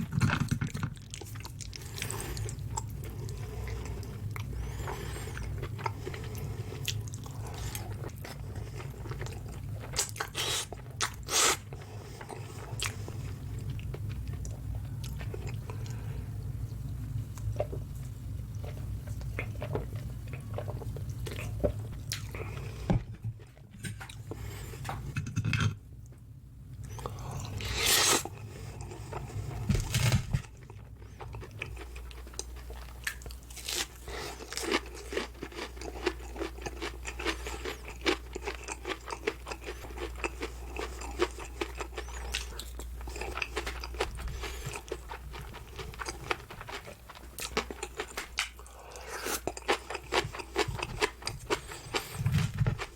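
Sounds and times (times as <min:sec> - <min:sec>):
crunchy chewing: 0:26.9 - 0:52.9.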